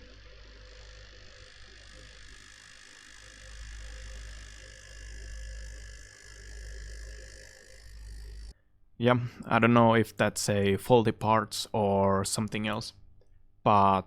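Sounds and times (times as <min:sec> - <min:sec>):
graphics card fans whirring: 0:00.0 - 0:08.6.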